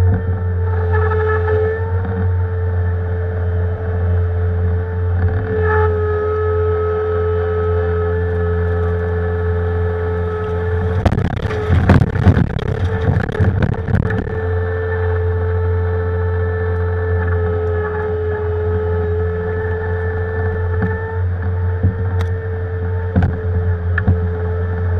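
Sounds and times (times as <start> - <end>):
engine humming and whining: 0.0 - 24.9
bucket scraping in loose shale: 10.2 - 14.6.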